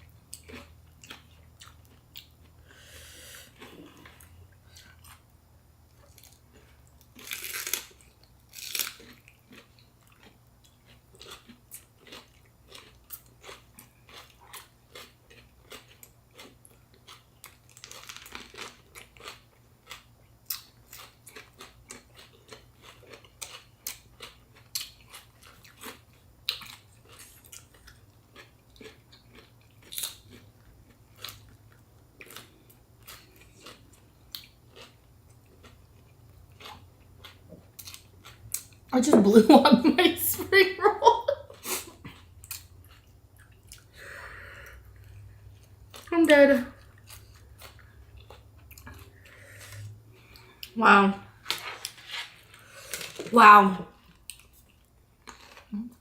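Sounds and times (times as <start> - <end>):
wet crunchy chewing: 54.0 - 55.8.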